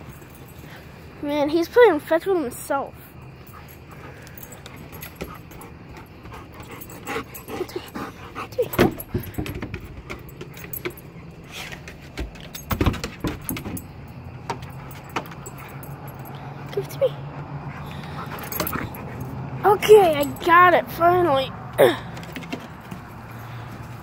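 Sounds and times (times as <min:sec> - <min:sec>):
ball knocking and rattling: 0:08.7 - 0:11.2.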